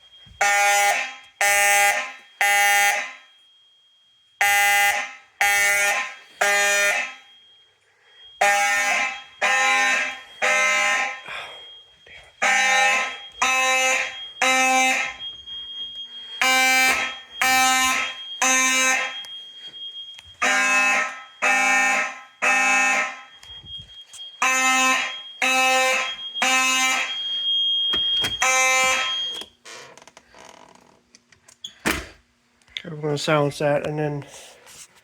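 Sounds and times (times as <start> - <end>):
fire alarm horn blasts: 0.0 - 29.6
thin steady high tone: 7.1 - 21.5, 23.1 - 29.4.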